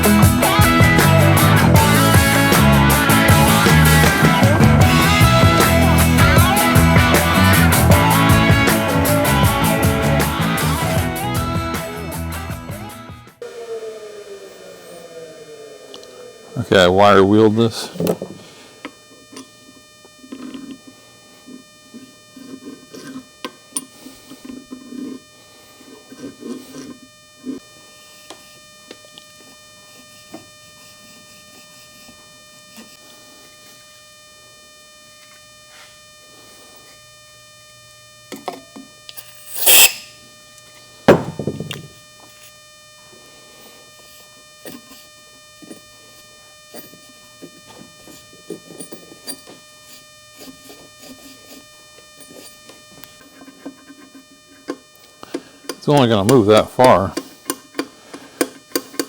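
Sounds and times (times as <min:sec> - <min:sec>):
heavy dull knock: 0:41.1 - 0:41.7.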